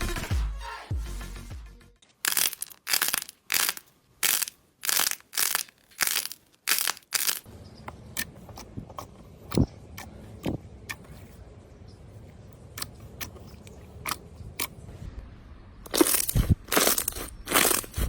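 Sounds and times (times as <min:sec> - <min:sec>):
slime being squeezed by hand: 0:02.3 - 0:07.4.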